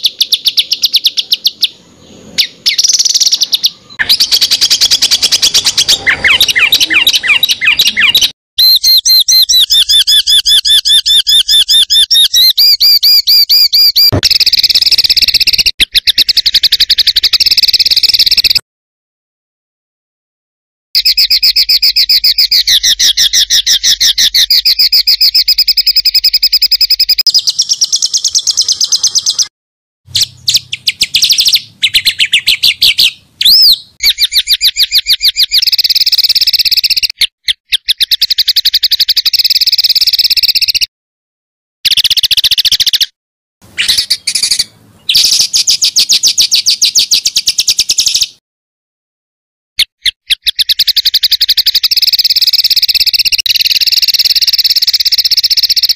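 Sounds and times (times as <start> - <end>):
songbird rapid high notes: 2.4 - 9.2
bird rising and falling whistle: 2.4 - 18.6, 21.0 - 29.5, 30.1 - 40.9, 43.8 - 48.4, 50.0 - 55.9.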